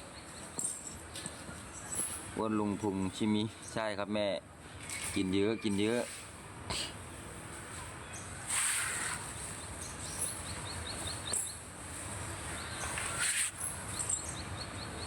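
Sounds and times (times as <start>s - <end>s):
brief rustling hisses: 8.5s - 9.5s, 12.9s - 13.7s.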